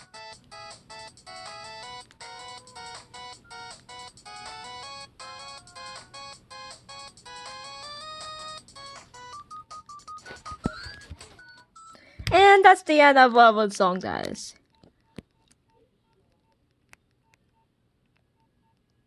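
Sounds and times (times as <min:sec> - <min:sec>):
phone ringtone melody: 0:00.0 - 0:12.0.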